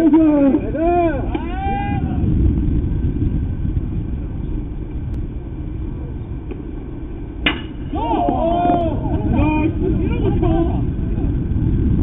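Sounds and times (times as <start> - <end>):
low background rumble: 0.0 - 12.0
sharp crack: 7.4 - 8.4.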